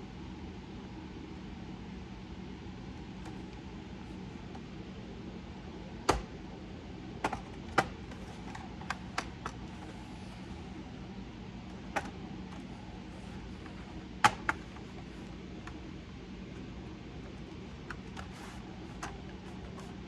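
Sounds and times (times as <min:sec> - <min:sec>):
steady low hum: 0:00.0 - 0:20.0
tool clicking on laptop case: 0:13.4 - 0:14.9.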